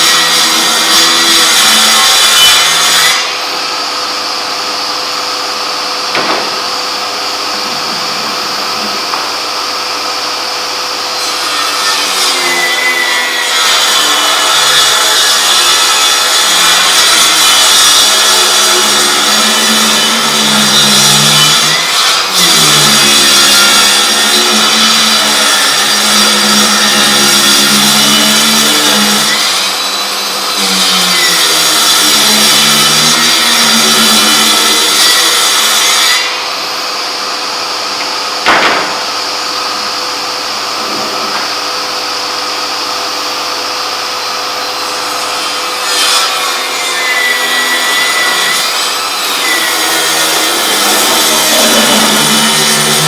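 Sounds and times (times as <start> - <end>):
table saw cutting wood: 0.0 - 53.0
sharp knock: 6.1 - 6.6, 38.4 - 39.2.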